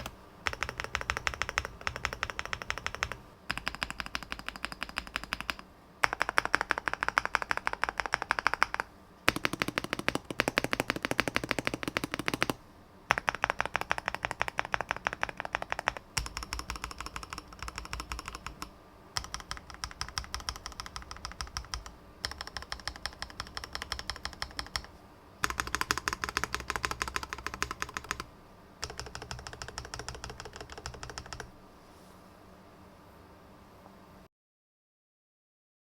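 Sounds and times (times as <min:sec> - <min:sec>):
fast mechanical keyboard typing: 0:00.0 - 0:31.5.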